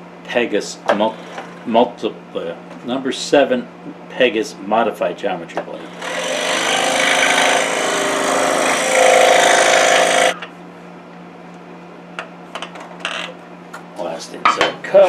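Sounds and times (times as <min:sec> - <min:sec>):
scroll saw cutting wood: 0:05.8 - 0:10.4.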